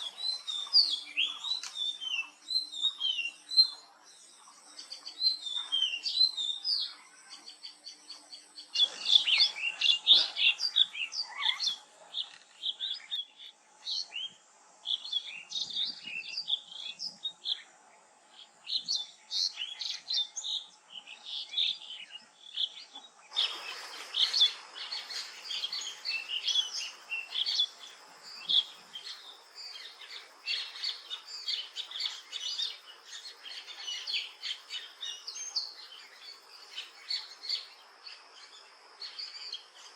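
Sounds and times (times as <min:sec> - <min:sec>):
birds chirping and twittering: 0:00.0 - 0:39.9.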